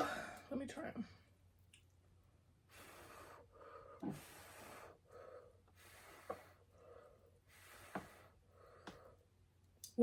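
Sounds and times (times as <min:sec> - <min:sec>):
woman blowing air puffs: 0:02.6 - 0:09.1.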